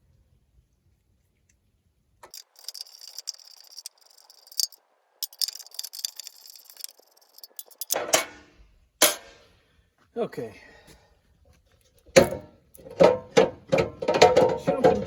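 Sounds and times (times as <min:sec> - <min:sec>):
ratchet wrench clicking: 0:02.3 - 0:08.0.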